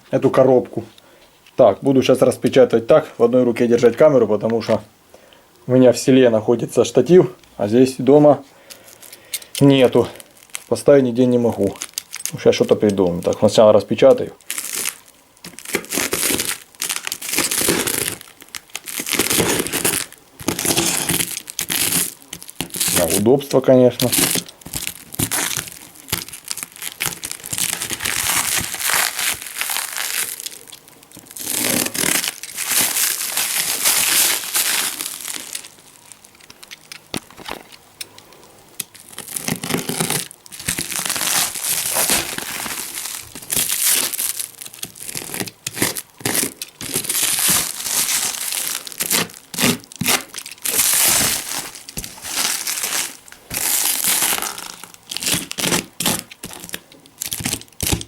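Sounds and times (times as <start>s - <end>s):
tape tearing: 11.4s - 13.6s, 14.4s - 23.3s, 23.9s - 37.7s, 38.8s - 58.0s
cardboard crumpling and rustling: 14.4s - 37.7s, 38.9s - 58.0s.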